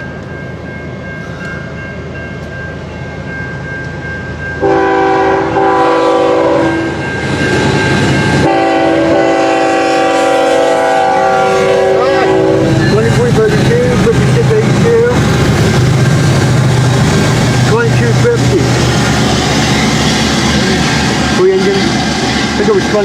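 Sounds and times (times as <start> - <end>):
low rumble of train: 0.0 - 23.0
locomotive horn blasts: 4.6 - 7.0, 8.4 - 13.0.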